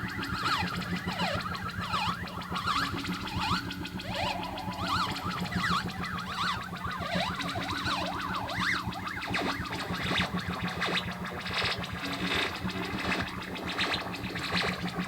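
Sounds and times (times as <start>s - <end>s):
pulsing low synthesizer drone: 0.0s - 15.0s
synthesizer tone sweeping up and down: 1.2s - 7.6s.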